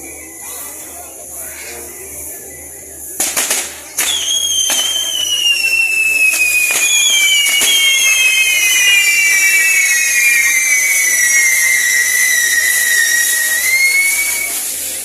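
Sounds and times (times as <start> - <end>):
whistling fireworks: 1.8 - 15.0
firework cracks: 3.2 - 15.0.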